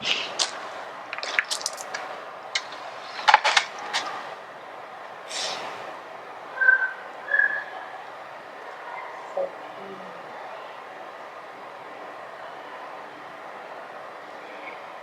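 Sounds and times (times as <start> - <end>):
campfire crackling and popping: 0.0 - 5.9.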